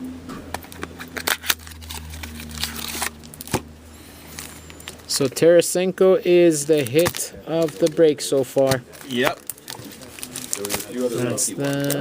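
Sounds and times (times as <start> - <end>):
low steady hum: 0.0 - 12.0
plastic wrapper crinkling: 0.6 - 5.4, 6.6 - 12.0
cards clicking and tapping: 6.8 - 9.3.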